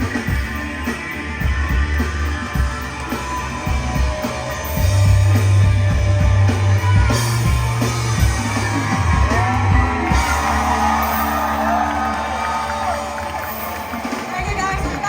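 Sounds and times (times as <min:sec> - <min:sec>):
electric guitar: 0:00.0 - 0:15.0
heavy bass line: 0:00.0 - 0:15.0.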